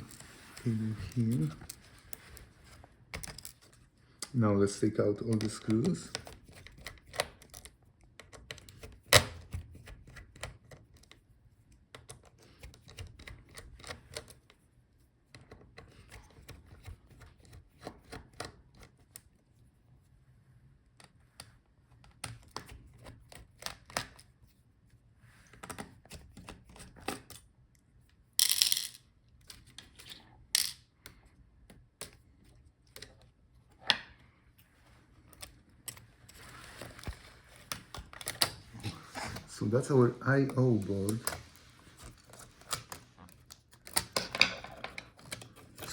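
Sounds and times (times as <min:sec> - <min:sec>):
small metal parts clicking: 0:28.4 - 0:29.0, 0:30.6 - 0:30.8.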